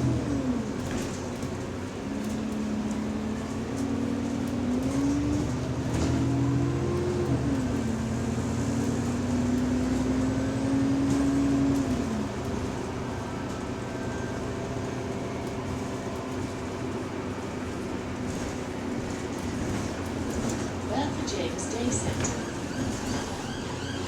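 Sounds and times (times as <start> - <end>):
bus drivetrain whine: 0.0 - 24.0
bus running rumble: 0.0 - 24.0.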